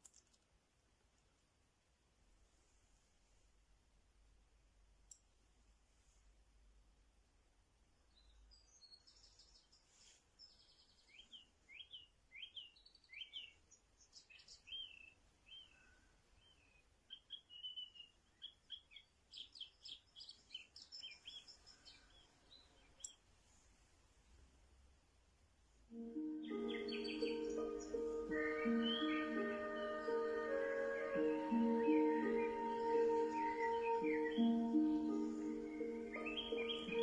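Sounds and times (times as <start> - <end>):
recorded birdsong chirps and whistles: 8.1 - 23.3, 26.0 - 37.0.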